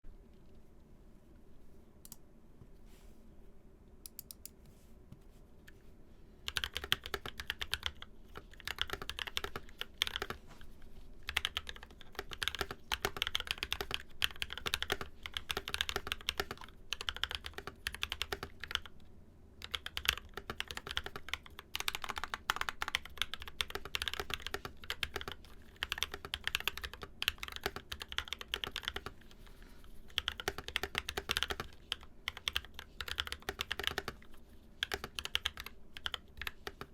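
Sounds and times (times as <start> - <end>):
typing on mechanical keyboard: 6.5 - 10.4, 11.2 - 19.0, 19.6 - 29.3, 30.1 - 36.9.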